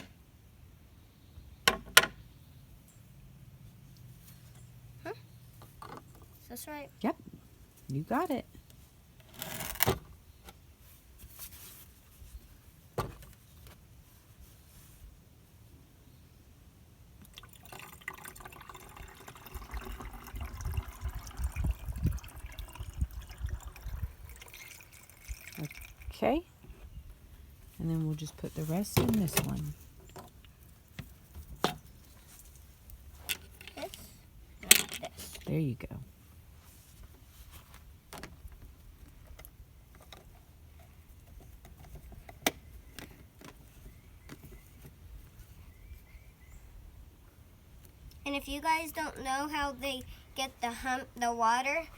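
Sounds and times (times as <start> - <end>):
liquid trickling and splashing: 17.2 - 26.4.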